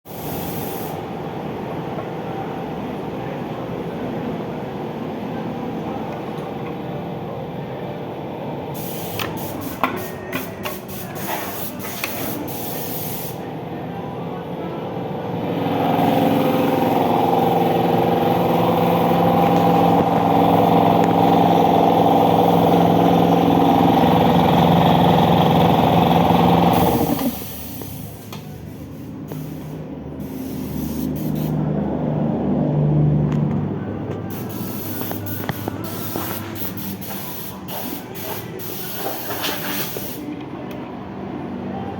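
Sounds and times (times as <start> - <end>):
air hissing: 0.1 - 1.1, 8.7 - 13.5, 26.2 - 31.7, 34.3 - 40.4
air compressor motor running: 14.9 - 31.7, 34.3 - 40.2.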